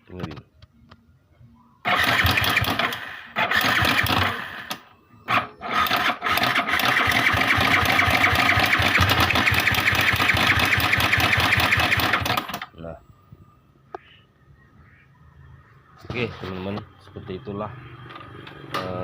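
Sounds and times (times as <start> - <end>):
motorcycle engine starting and running: 1.8 - 12.7, 17.8 - 19.0.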